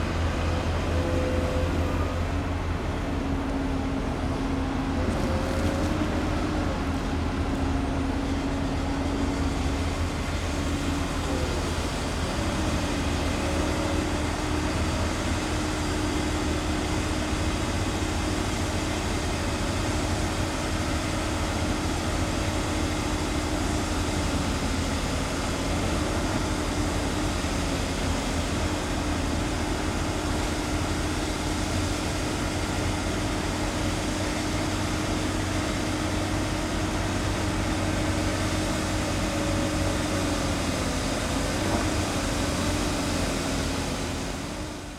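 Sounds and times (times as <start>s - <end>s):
excavator diesel engine running: 0.0s - 44.9s.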